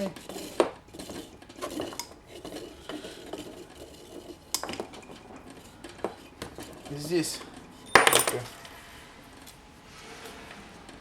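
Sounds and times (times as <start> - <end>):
metal parts clinking on workbench: 7.9 - 8.5.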